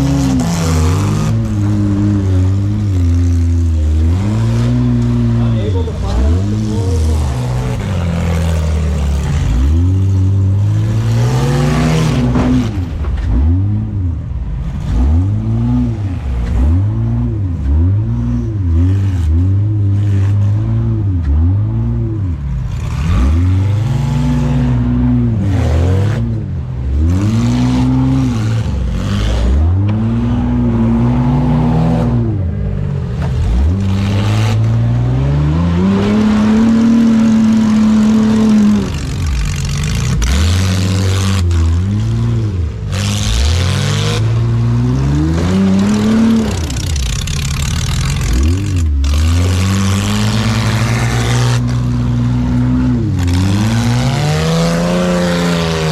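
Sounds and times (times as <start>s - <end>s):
van engine revving hard: 0.0s - 14.2s, 14.8s - 32.5s, 33.3s - 55.9s
knocks and clatter: 12.0s - 13.6s.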